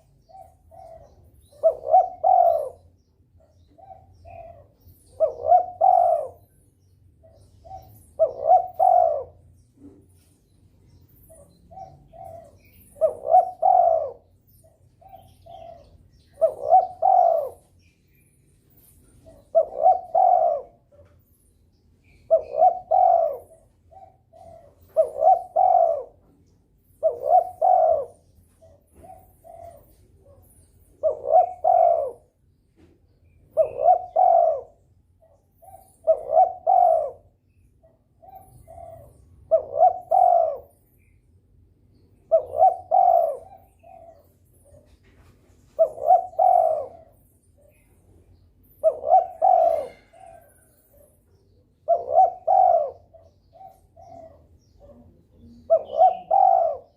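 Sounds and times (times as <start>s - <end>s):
dove cooing: 0.0s - 17.9s, 18.6s - 21.4s, 22.0s - 56.9s.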